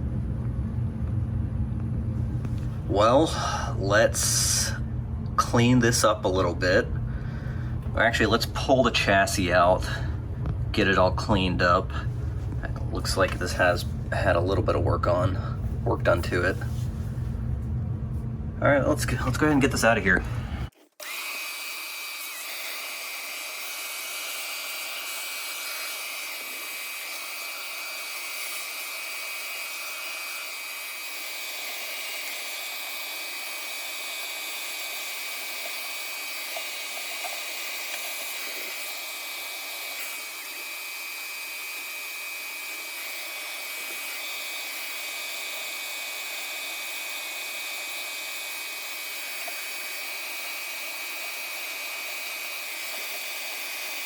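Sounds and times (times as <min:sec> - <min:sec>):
electric blower rushing air: 0:19.5 - 0:54.0.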